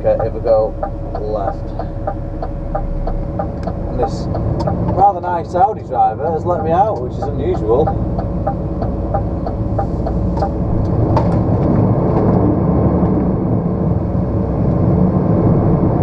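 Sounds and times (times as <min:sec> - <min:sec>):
turn indicator ticking: 0:00.0 - 0:11.5
diesel lorry engine under load: 0:00.0 - 0:16.0.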